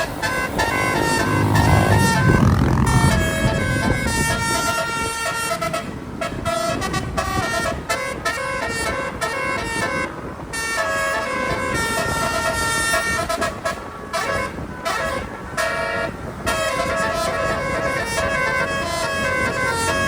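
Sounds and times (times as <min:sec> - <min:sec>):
multi-trumpet air horn tune: 0:00.0 - 0:20.0.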